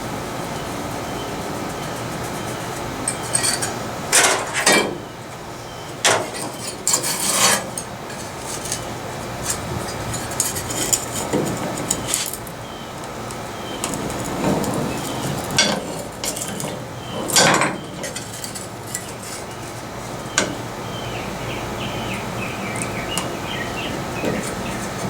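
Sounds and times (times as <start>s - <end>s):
metal tools clinking: 2.3s - 5.0s, 6.0s - 12.6s, 13.8s - 19.8s.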